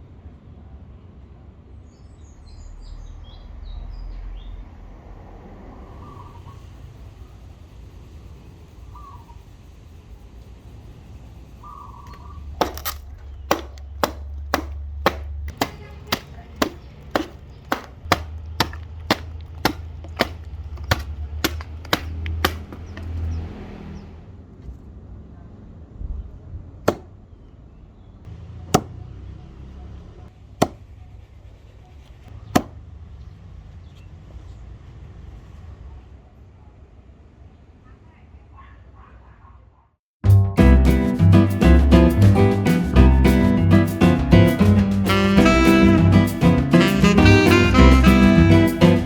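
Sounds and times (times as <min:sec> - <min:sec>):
axe chopping wood: 0:12.6 - 0:23.2, 0:26.9 - 0:27.2, 0:28.7 - 0:29.0, 0:30.6 - 0:30.8, 0:32.5 - 0:32.8.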